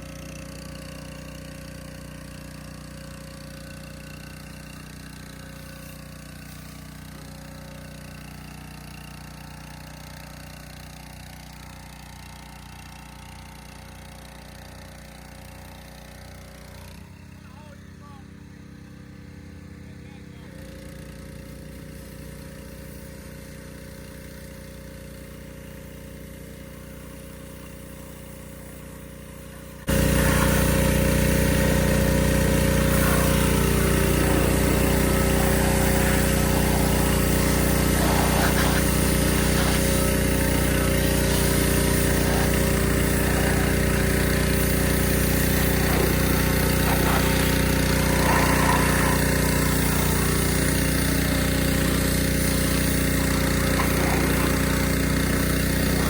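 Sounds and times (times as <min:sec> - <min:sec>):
pressure washer drone: 0:00.0 - 0:56.0
hissing water spray: 0:27.4 - 0:56.0.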